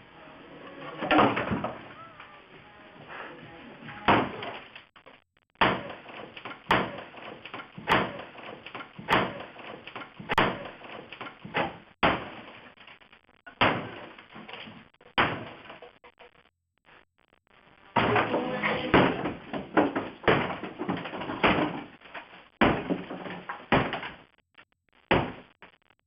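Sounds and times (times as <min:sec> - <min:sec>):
sledgehammer heavy blows: 0:05.6 - 0:12.6, 0:18.0 - 0:24.1
debris clattering: 0:18.0 - 0:24.3.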